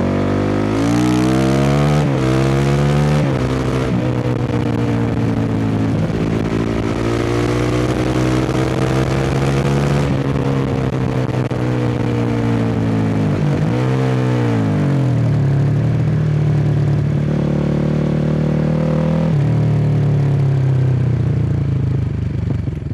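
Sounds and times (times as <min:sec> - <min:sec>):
dirt bike engine revving: 0:00.0 - 0:10.8.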